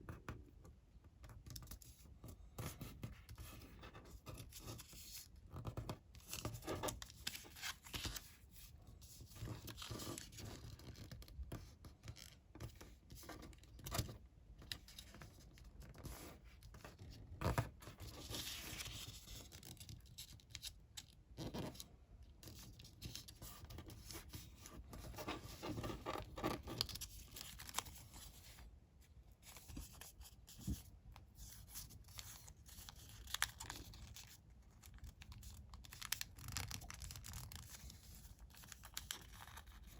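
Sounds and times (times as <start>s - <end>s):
paper rustling and creasing: 4.4s - 13.0s, 22.4s - 28.7s, 29.3s - 39.9s
paper crackle: 31.5s - 39.9s.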